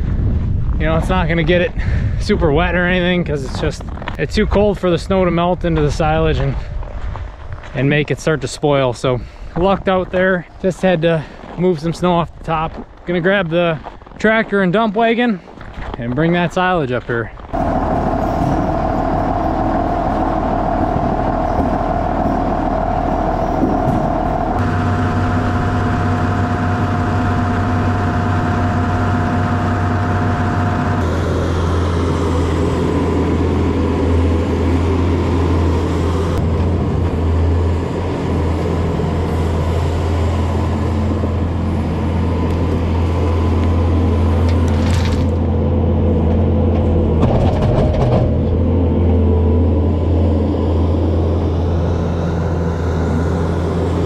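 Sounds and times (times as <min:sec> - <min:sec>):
tractor engine running: 0:17.4 - 0:54.0.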